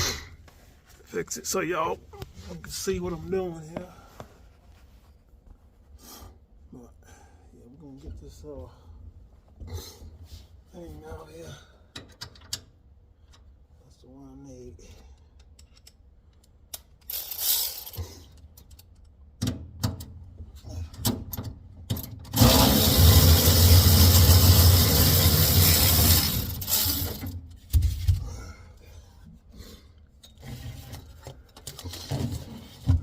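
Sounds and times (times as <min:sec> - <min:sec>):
metal clicks and knocks: 0:11.9 - 0:12.7
loud mechanical rattling: 0:22.3 - 0:27.4.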